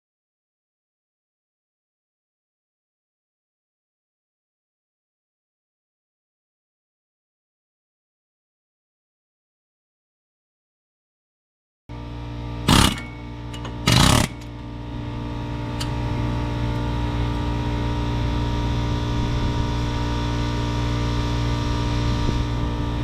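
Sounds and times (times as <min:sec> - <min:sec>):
steady machine hum: 0:11.9 - 0:23.0
pneumatic air hammer bursts: 0:12.7 - 0:14.6.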